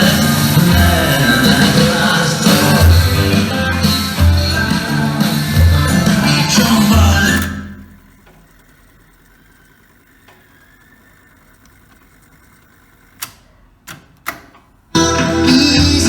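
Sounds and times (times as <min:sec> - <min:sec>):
music playback: 0:00.0 - 0:07.7, 0:15.0 - 0:16.0.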